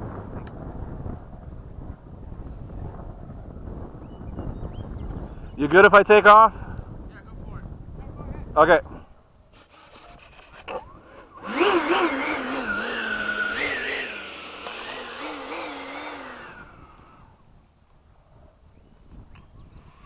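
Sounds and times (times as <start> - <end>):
electric ducted fan whine: 9.6 - 17.5.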